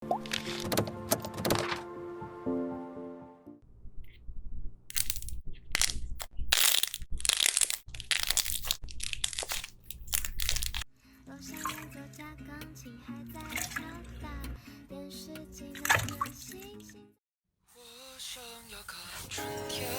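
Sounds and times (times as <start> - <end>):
music: 0.0 - 3.6, 11.0 - 17.2, 17.8 - 19.9
slime crackling and squelching: 4.9 - 10.9.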